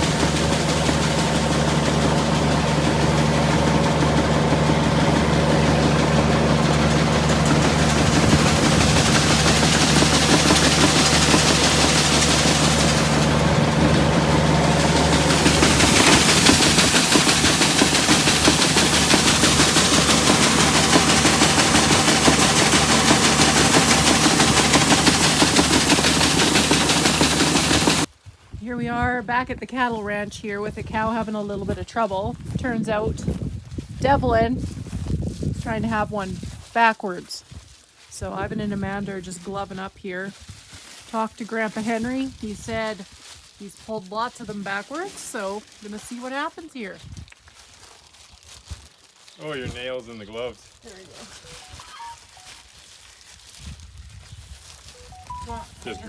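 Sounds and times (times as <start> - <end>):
road noise: 0.0 - 24.6
rattle: 0.0 - 28.1
vehicle engine running: 0.0 - 28.1, 55.0 - 56.0.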